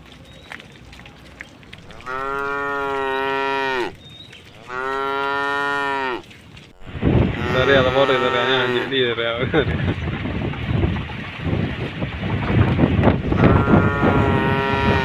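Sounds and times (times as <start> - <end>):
cow mooing: 1.9 - 4.0, 4.6 - 6.2, 6.8 - 9.0, 13.3 - 15.0.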